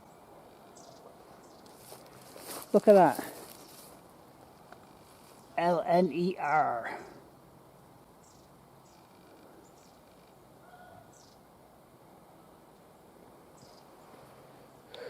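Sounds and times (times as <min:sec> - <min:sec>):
faint bird chirps: 0:00.0 - 0:01.7, 0:08.2 - 0:11.4, 0:13.6 - 0:15.0.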